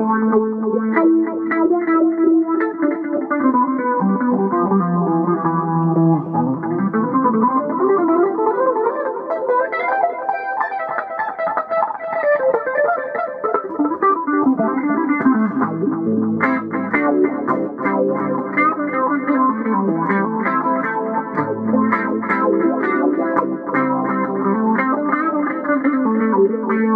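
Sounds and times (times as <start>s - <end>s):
electric guitar playing: 0.0s - 26.9s.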